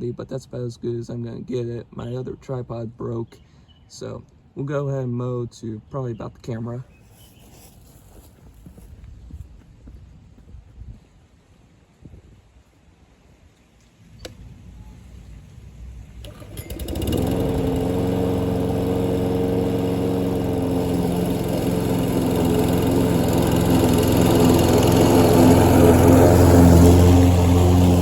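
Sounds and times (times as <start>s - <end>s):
lawn mower engine starting: 14.0s - 28.0s
lawn mower running: 14.2s - 28.0s.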